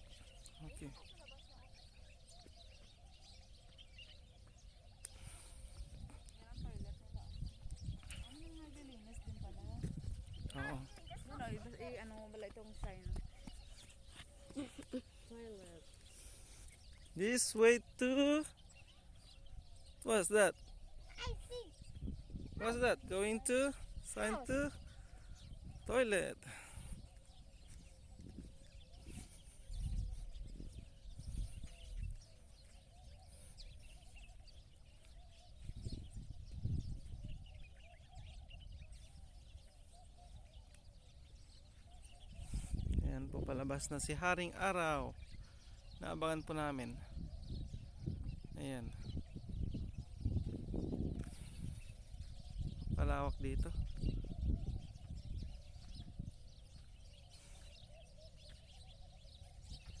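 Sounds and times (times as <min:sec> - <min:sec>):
small birds chirping: 0:00.0 - 1:00.0
low rumbling on microphone: 0:05.1 - 0:14.2, 0:20.7 - 0:23.2, 0:26.5 - 0:43.7, 0:47.0 - 1:00.0.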